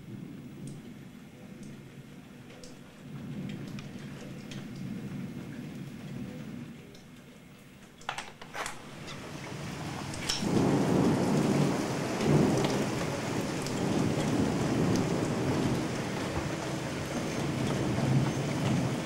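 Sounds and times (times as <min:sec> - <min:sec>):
torrential rain hissing: 0:00.0 - 0:08.0, 0:08.7 - 0:19.0
thunder rumbling: 0:02.9 - 0:06.8, 0:08.8 - 0:19.0.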